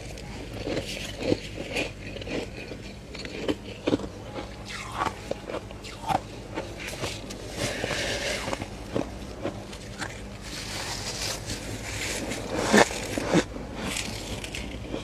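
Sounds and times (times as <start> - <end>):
steady low hum: 0.0 - 15.0
frost being crunched: 6.8 - 15.0.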